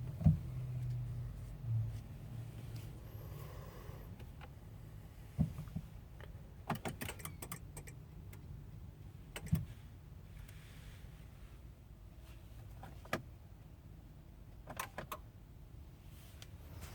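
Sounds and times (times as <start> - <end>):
low steady hum: 0.0 - 6.7.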